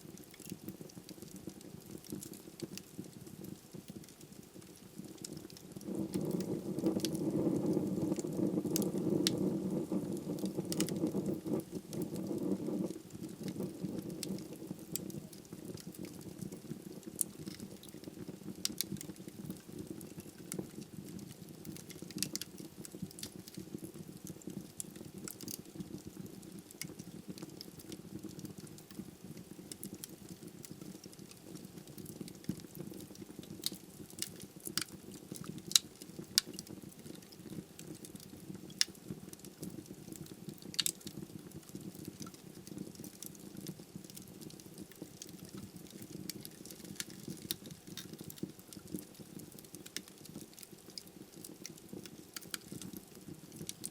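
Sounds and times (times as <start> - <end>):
fire crackles and pops: 0.0 - 53.9
fire flames rushing: 1.9 - 28.7.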